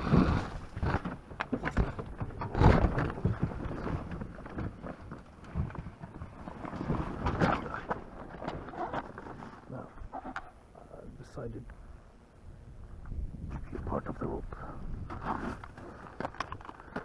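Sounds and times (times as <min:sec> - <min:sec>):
handling knocks and rustles: 0:00.0 - 0:10.6, 0:15.0 - 0:17.0.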